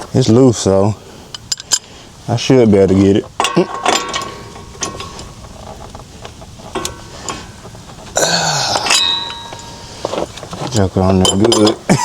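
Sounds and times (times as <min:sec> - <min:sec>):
tools clicking on metal: 0:03.4 - 0:07.7, 0:10.8 - 0:11.9
man grunting with effort: 0:08.2 - 0:09.0
metal tool ringing: 0:08.6 - 0:10.1, 0:11.2 - 0:11.9.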